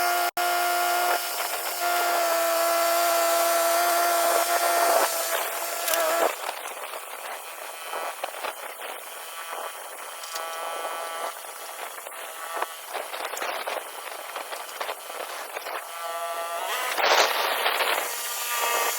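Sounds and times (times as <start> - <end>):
bandsaw mill sawing wood: 0.0 - 18.9.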